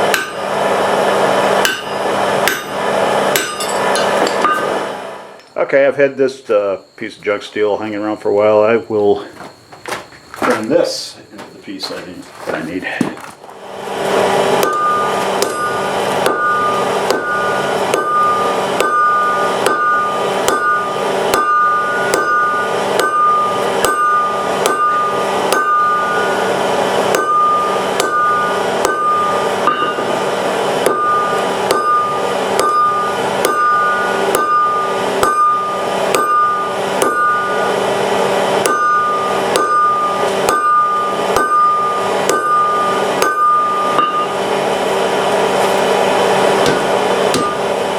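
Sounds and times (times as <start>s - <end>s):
anvil ringing: 0.0s - 0.6s, 1.4s - 4.9s, 14.4s - 44.6s, 46.1s - 47.9s
hammer striking steel on anvil: 0.0s - 4.9s, 14.5s - 44.5s, 45.7s - 47.9s.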